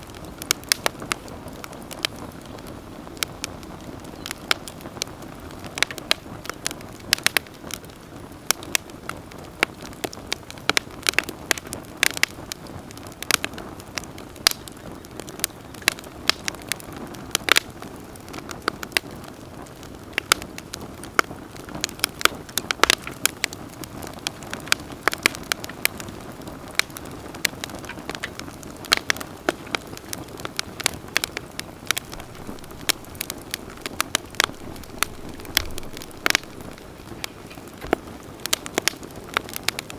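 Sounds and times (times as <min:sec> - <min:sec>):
campfire pops and snaps: 0:00.0 - 0:39.9
low hiss of burning: 0:00.0 - 0:39.9.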